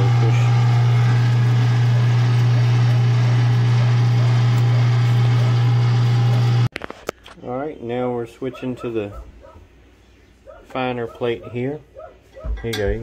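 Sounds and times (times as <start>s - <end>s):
electric meat grinder humming: 0.0s - 6.7s.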